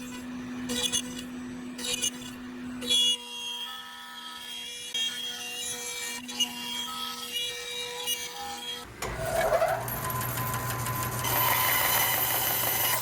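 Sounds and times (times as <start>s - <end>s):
router bit cutting wood: 0.0s - 13.0s
motor tones switching on and off: 8.9s - 13.0s.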